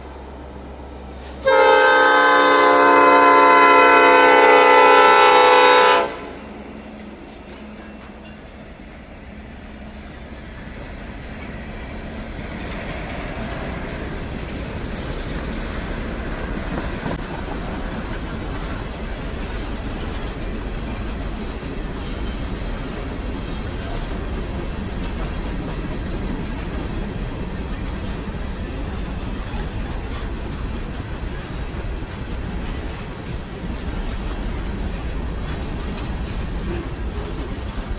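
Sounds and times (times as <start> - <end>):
freight train rumble and wheel clatter: 0.0 - 37.9
train horn chord: 1.2 - 6.8.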